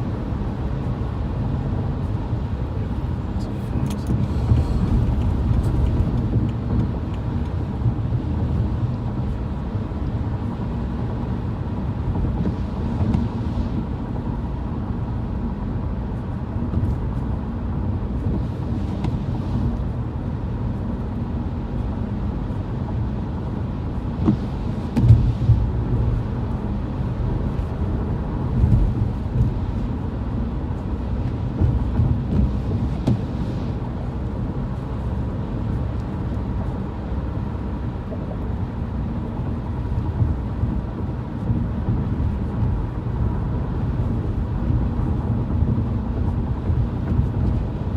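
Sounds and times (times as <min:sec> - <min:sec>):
road rumble inside moving car: 0:00.0 - 0:47.9
car bumps: 0:24.2 - 0:25.7.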